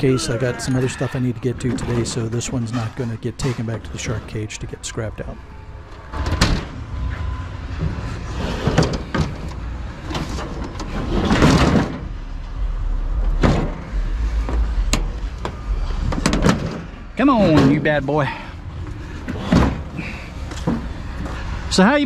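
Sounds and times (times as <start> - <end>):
metal scraping: 0.0 - 21.8
scrap metal knocks and clanks: 6.1 - 21.6.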